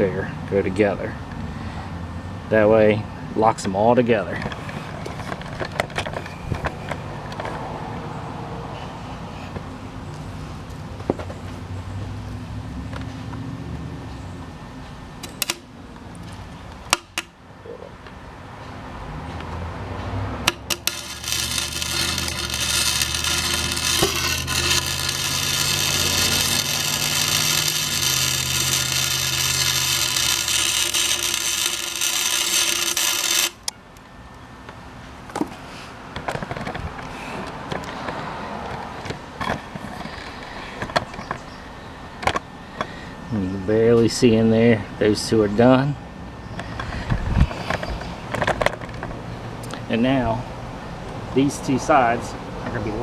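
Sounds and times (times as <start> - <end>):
arc welding crackling hiss: 20.5 - 33.7.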